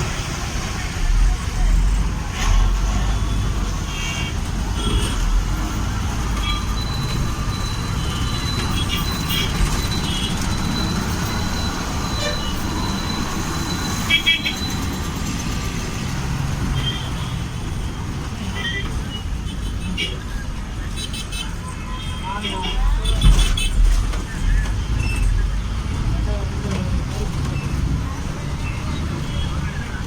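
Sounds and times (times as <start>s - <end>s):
vehicle engines rumbling: 0.0s - 30.0s
car horns beeping: 2.4s - 5.6s, 6.2s - 15.0s, 16.7s - 17.5s, 18.4s - 25.3s.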